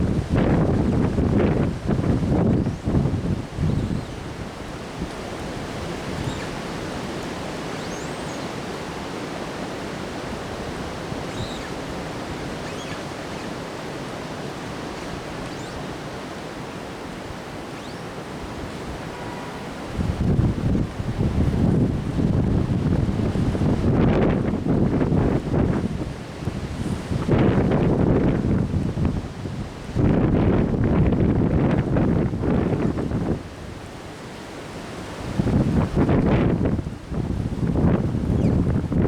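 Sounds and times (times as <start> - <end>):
strong wind rushing: 0.0 - 6.5, 18.6 - 33.5, 35.2 - 39.0.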